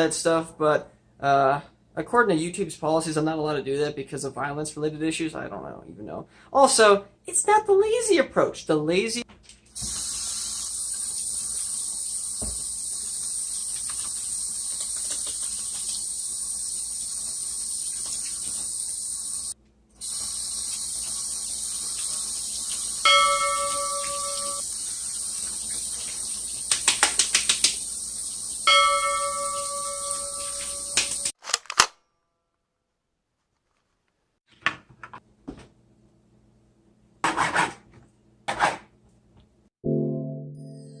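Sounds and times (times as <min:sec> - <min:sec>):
bell-like dings: 0:23.1 - 0:24.6, 0:28.7 - 0:31.3.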